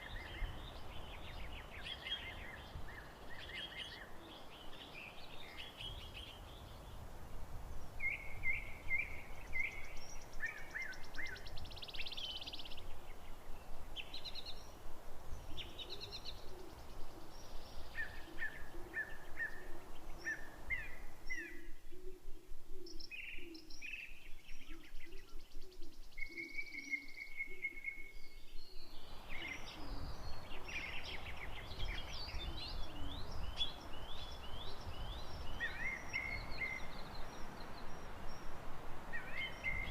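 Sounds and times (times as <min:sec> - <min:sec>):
birds chirping and singing: 0:22.9 - 0:38.5, 0:39.2 - 0:39.9.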